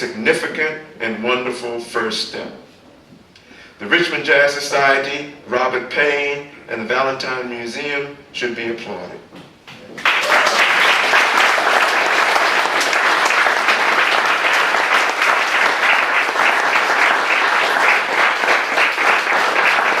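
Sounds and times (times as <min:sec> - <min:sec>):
audience applauding: 0:10.0 - 0:20.0.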